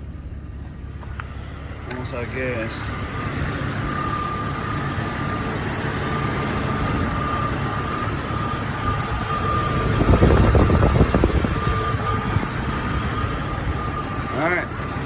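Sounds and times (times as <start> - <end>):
car engine idling: 0.0 - 15.0
thin steady whine: 0.0 - 15.0.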